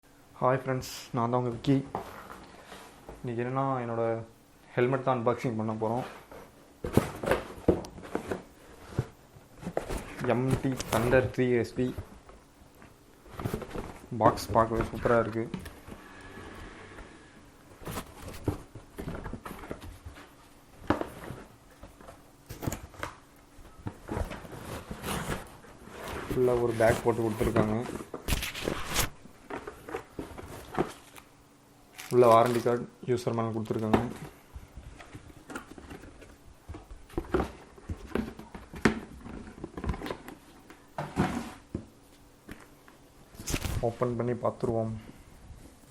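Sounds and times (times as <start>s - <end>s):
box and packaging being handled: 5.9s - 16.0s, 17.7s - 31.3s, 31.9s - 32.8s, 33.5s - 42.7s
rustling: 5.9s - 31.3s.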